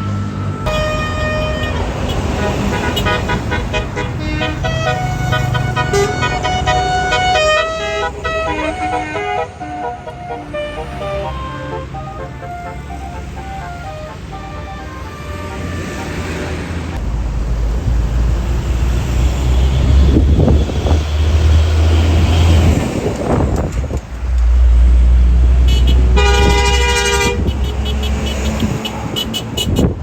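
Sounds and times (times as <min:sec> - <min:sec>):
bus engine rumble: 0:00.0 - 0:30.0
multi-tone horn chord: 0:00.7 - 0:16.7, 0:25.7 - 0:27.5.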